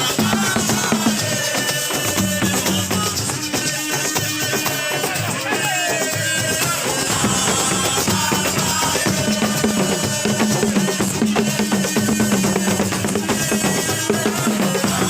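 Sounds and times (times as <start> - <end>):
drum-heavy music: 0.0 - 15.0.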